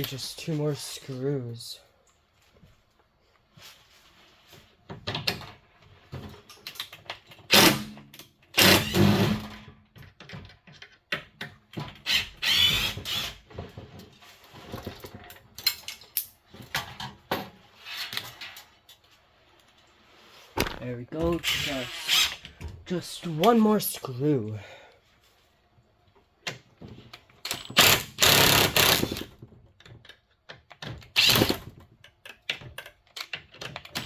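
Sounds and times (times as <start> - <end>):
screwdriver backing out screws: 30.8 - 31.7.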